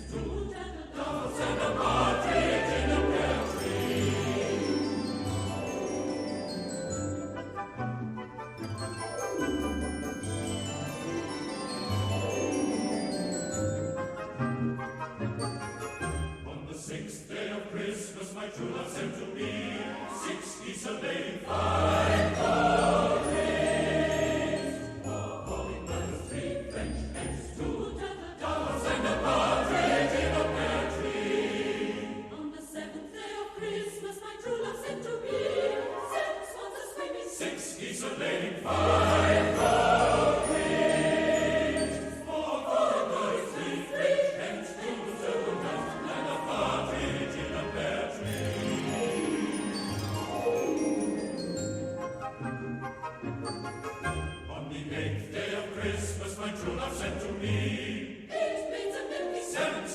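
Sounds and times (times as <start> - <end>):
choir singing: 0.0 - 14.4, 16.2 - 52.4, 53.0 - 59.9
instrumental accompaniment: 1.4 - 16.5, 44.8 - 54.6
bell-like high notes: 3.4 - 7.6, 8.6 - 14.2, 47.8 - 54.6.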